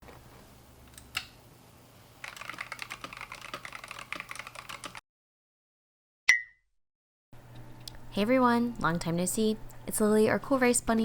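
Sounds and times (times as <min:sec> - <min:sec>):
keyboard typing: 0:02.2 - 0:05.0.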